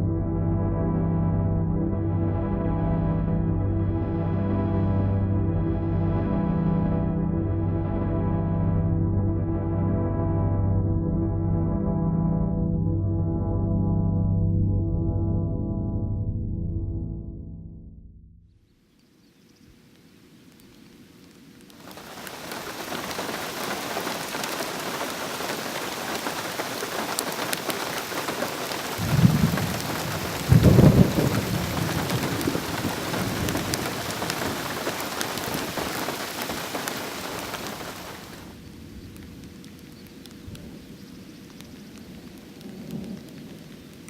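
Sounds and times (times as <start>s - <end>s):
bonfire crackling and popping: 19.9s - 44.0s.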